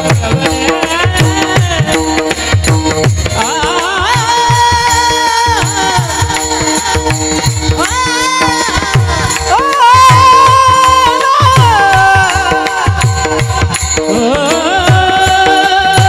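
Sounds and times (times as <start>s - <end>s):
harmonium drone: 0.0s - 16.0s
person singing: 0.0s - 16.0s.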